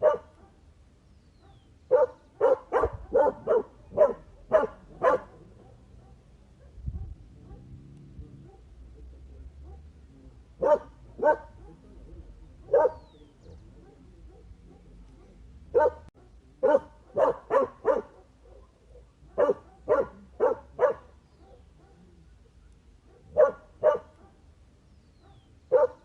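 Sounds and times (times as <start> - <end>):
dog barking: 0.0 - 0.7, 1.4 - 10.0, 10.6 - 12.0, 12.6 - 24.5, 25.2 - 26.0.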